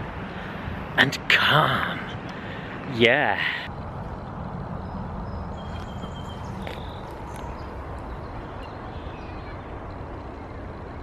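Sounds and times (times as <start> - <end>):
faint bird chirps: 4.8 - 9.8.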